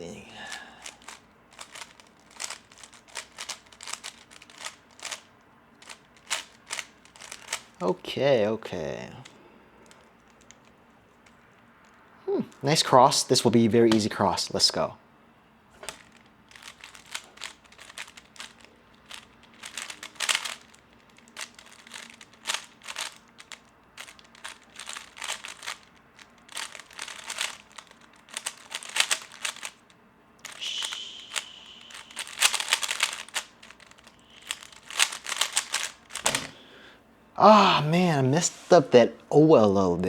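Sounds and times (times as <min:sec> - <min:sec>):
plastic puzzle cube clacking: 0:00.9 - 0:07.8, 0:15.8 - 0:29.8, 0:30.4 - 0:36.5
steady high tone: 0:30.5 - 0:32.8.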